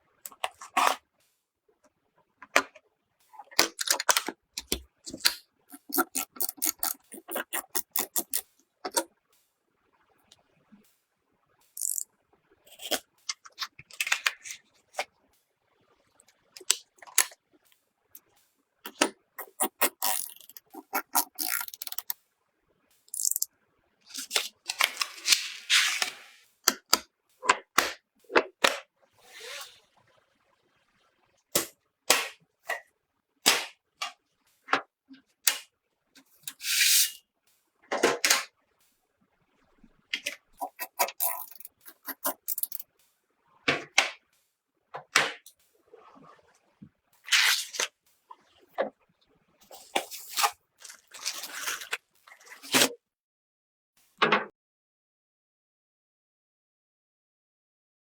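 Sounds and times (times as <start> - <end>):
computer parts clicking and knocking: 3.5 - 9.0, 23.1 - 23.5, 40.6 - 42.8.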